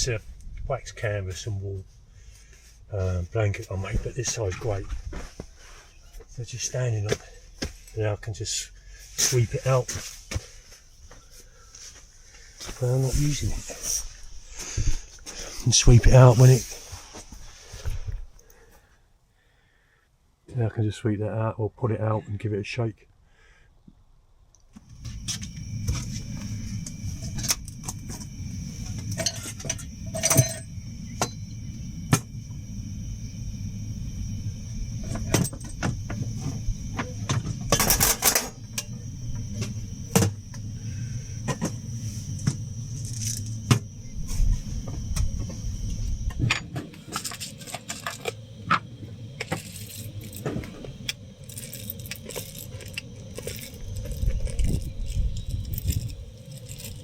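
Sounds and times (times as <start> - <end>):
steady low rumble: 24.8 - 57.0
light metallic clinks and rattles: 26.8 - 31.5, 51.4 - 57.0.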